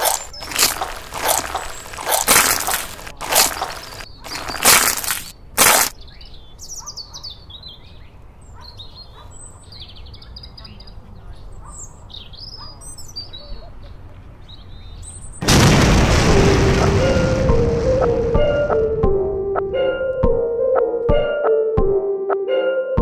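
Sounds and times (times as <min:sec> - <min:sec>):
birds chirping: 0:00.0 - 0:15.4.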